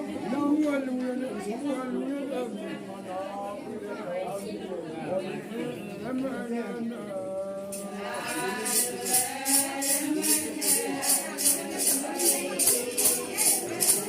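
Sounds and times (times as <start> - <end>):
group voices singing and chanting: 6.7 - 14.0
shaken metal jingle: 7.8 - 14.0.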